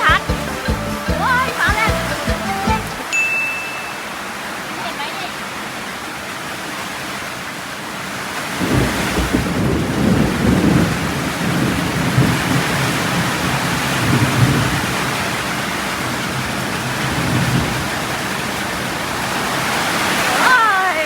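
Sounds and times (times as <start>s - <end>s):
heavy rain pouring: 0.0s - 21.0s
rolling thunder: 8.6s - 15.4s.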